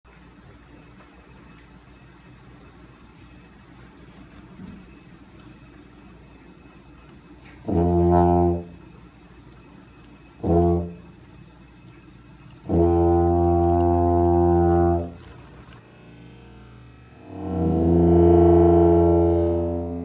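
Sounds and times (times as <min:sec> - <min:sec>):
tuba low blasts: 0:07.6 - 0:08.8, 0:10.4 - 0:11.1, 0:12.6 - 0:15.2, 0:17.2 - 0:20.0.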